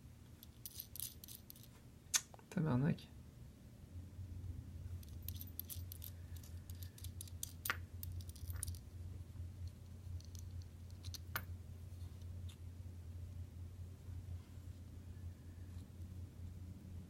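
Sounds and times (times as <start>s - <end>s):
steady low hum: 0.0s - 17.0s
lock parts clicking and scraping: 0.4s - 1.7s, 5.0s - 8.9s, 9.6s - 11.5s.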